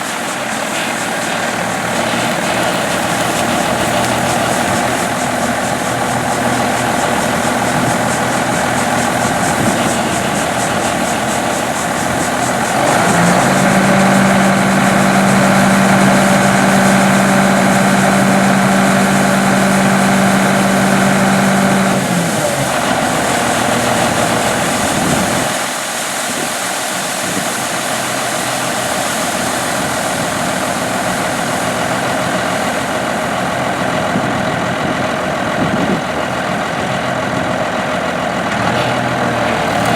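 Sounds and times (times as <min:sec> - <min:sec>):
tractor diesel engine running: 0:00.0 - 0:25.8, 0:27.2 - 0:39.9.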